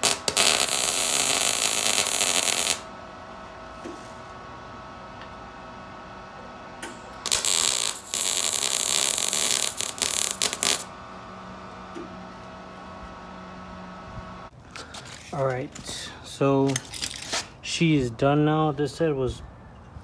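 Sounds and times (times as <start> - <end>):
welder arc crackling and hissing: 0.0 - 2.9, 7.2 - 10.9.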